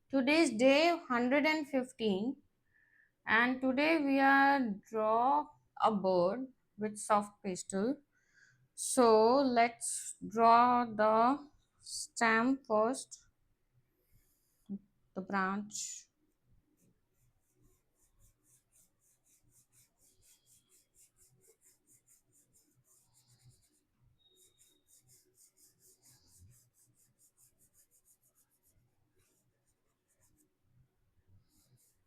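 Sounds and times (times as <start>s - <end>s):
pastel scratching on paper: 14.0s - 14.7s, 15.7s - 32.0s.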